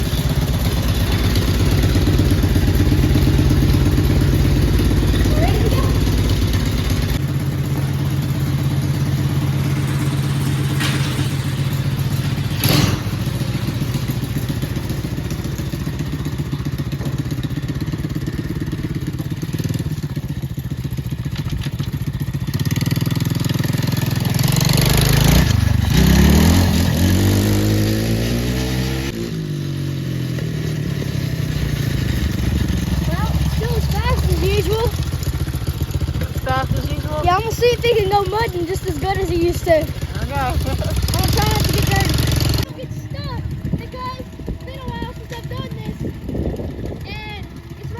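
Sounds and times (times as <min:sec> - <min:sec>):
atv engine idling and revving: 0:00.0 - 0:47.9.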